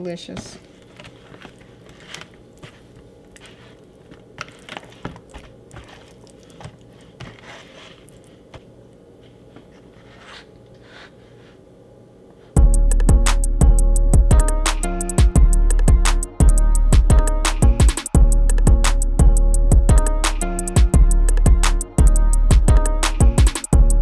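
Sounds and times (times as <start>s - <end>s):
hands handling kitchen items: 0.0s - 11.6s.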